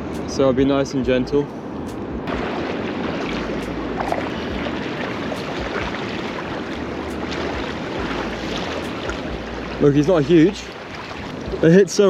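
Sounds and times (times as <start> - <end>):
wind buffeting microphone: 0.0 - 12.0
shallow water sloshing and splashing: 2.3 - 11.8.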